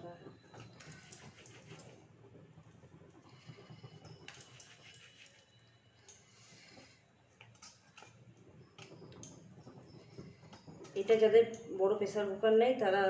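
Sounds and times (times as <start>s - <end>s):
faint clicks and taps: 7.4s - 11.8s.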